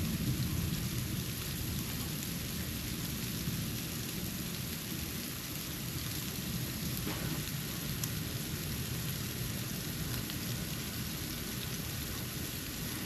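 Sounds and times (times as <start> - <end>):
steady hiss of falling snow: 0.0 - 13.0.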